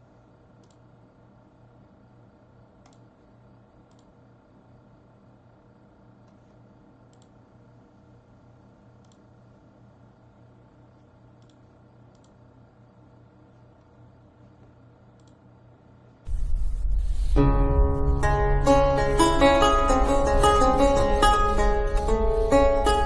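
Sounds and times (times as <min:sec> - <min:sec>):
faint electrical hum: 0:00.0 - 0:23.0
loud sound: 0:16.3 - 0:23.0.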